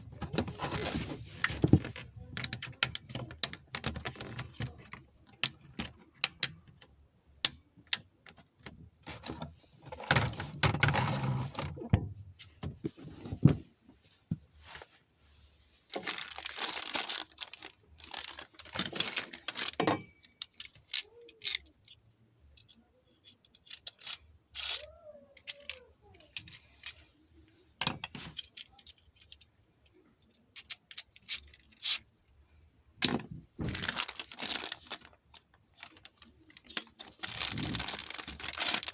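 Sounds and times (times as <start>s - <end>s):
plastic parts clicking and rattling: 0.2s - 12.0s, 15.9s - 27.1s, 27.8s - 32.1s, 33.0s - 38.9s
packaging rustling and tearing: 15.9s - 19.8s, 33.6s - 38.9s.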